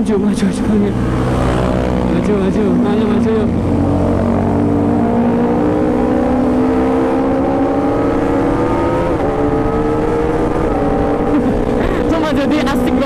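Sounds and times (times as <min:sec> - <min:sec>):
motorcycle engine revving up: 0:00.3 - 0:13.0.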